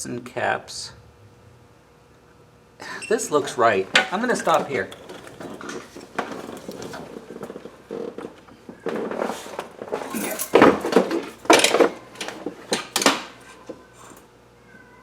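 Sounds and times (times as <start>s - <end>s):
metal tools clattering: 2.8s - 14.2s.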